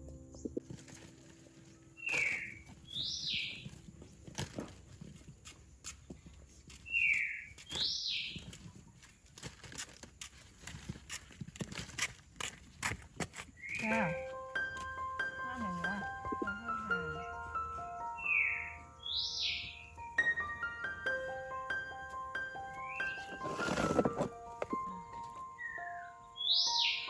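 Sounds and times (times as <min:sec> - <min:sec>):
bird whistling call: 0:25.6 - 0:27.0.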